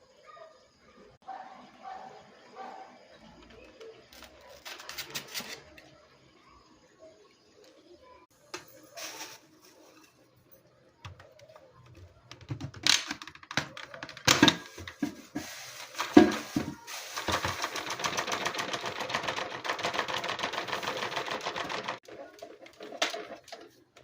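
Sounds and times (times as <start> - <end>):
plastic clicks and knocks: 11.0 - 15.2.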